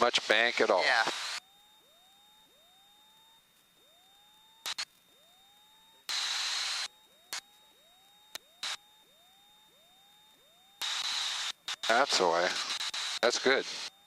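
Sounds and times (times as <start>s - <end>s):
faint high whine: 0.0s - 14.0s
sharp clicks: 4.6s - 5.0s.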